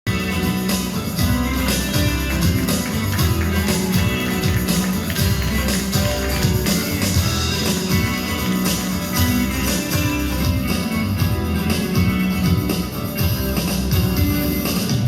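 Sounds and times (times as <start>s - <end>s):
dance music with steady beat: 2.0s - 10.2s.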